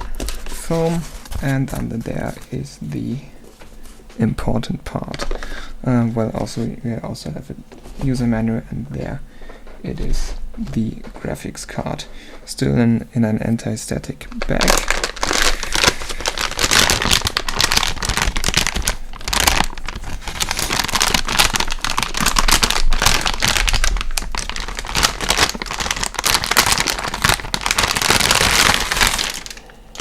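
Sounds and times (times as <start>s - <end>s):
plastic bag crinkling: 0.0s - 2.8s, 14.3s - 30.0s.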